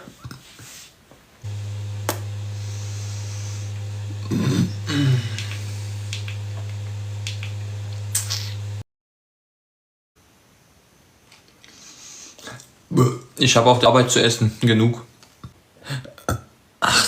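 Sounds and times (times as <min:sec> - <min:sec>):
steady low hum: 0:01.4 - 0:08.8.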